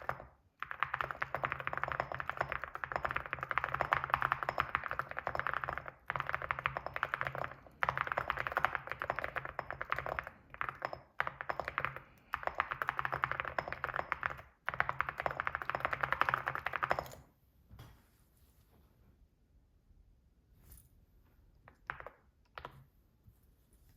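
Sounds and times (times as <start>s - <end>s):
fast typing on mechanical keyboard: 0.0s - 17.2s, 21.8s - 22.7s.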